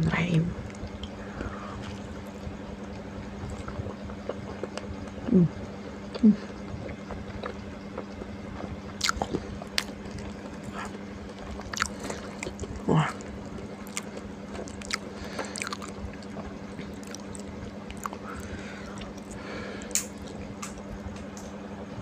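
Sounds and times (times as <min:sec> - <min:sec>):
low falling hums: 0:00.0 - 0:22.0
chewing and biting food: 0:01.0 - 0:20.9.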